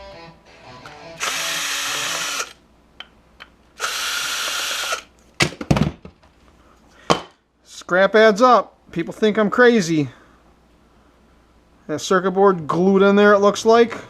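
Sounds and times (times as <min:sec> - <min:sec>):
small power tool running: 0:01.2 - 0:02.6, 0:03.8 - 0:05.1.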